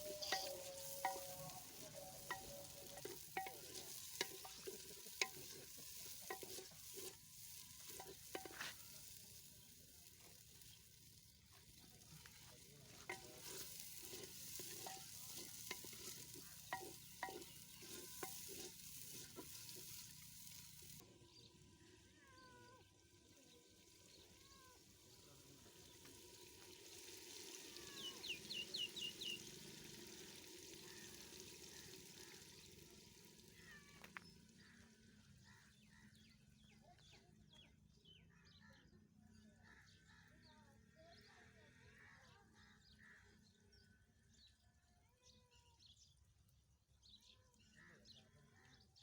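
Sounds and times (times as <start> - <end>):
spoon scraping a pot: 0.0 - 9.6, 12.2 - 21.0
food sizzling in a pot: 0.0 - 36.2.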